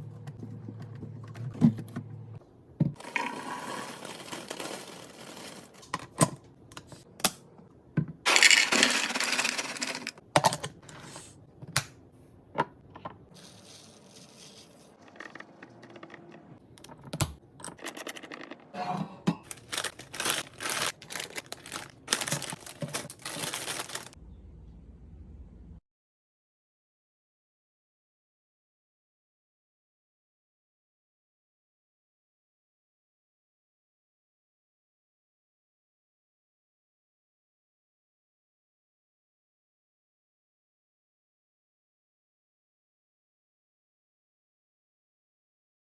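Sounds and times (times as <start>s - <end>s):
plastic packaging crinkling: 3.5s - 5.9s, 19.4s - 24.2s
items clicking being set down: 19.3s - 24.2s.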